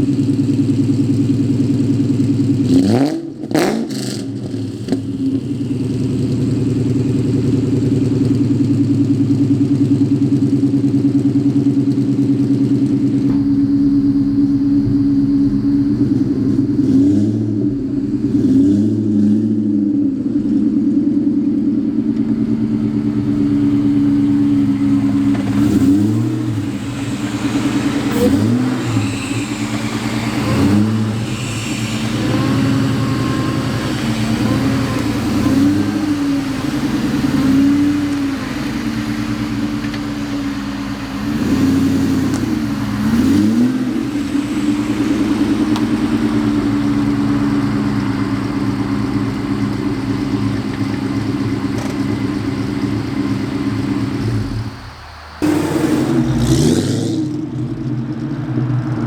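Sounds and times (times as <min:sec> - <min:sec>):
car engine idling and revving: 0:00.0 - 0:59.0.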